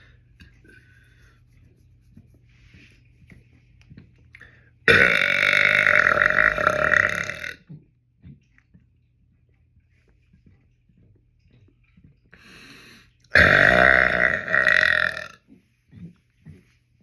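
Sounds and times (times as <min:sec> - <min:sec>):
man burping: 0:04.9 - 0:07.6, 0:13.3 - 0:15.4.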